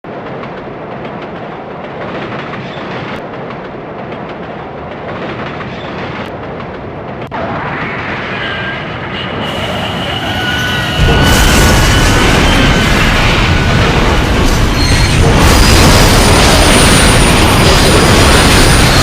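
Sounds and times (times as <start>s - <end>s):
train rumbling on rails: 0.0s - 19.0s
high metallic squeal: 7.8s - 13.4s, 14.6s - 19.0s.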